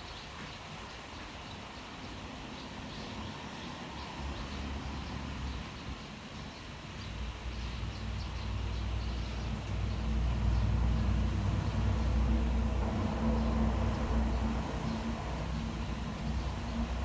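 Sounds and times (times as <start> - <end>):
low engine rumble: 7.4 - 17.0.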